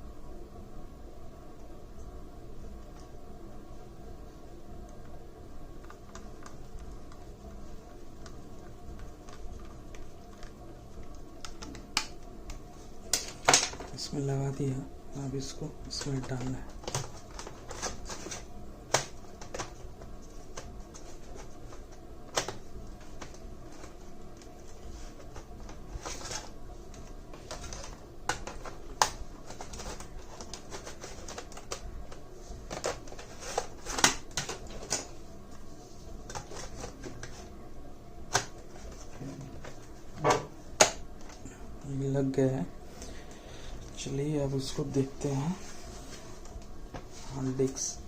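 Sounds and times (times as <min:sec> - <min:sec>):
clicks and knocks of handling: 0:15.9 - 0:24.5.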